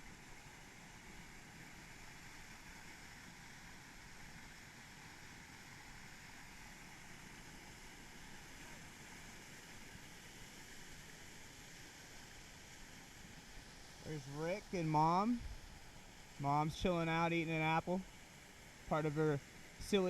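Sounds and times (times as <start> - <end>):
creek water rushing: 0.0 - 20.0.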